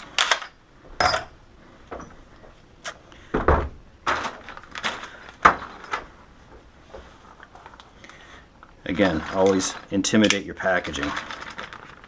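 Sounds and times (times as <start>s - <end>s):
small objects knocking and clicking: 7.4s - 12.0s.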